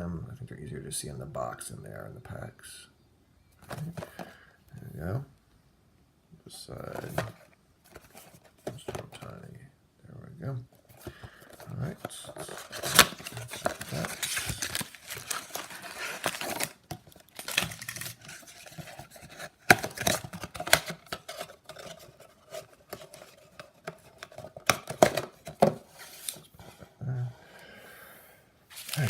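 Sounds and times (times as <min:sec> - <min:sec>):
cardboard and foil wrappers crinkling: 0:10.9 - 0:26.5, 0:28.7 - 0:29.0.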